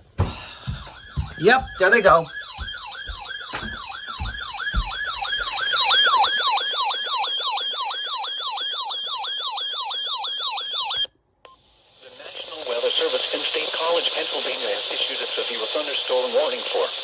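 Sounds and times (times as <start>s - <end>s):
electronic siren-like alert tone: 0.3s - 11.1s.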